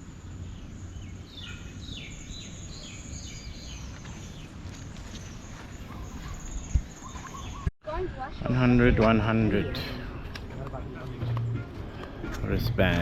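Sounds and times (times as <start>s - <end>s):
bird chirping: 0.2s - 8.5s.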